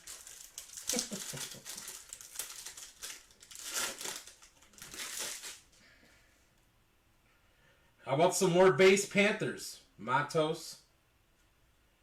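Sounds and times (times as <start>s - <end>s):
wrapper crinkling: 0.0s - 5.8s.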